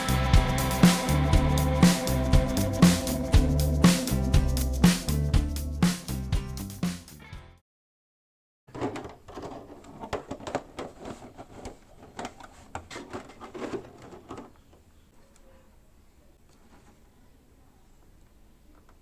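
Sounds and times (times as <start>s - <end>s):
hard parts clicking and knocking: 8.7s - 14.9s.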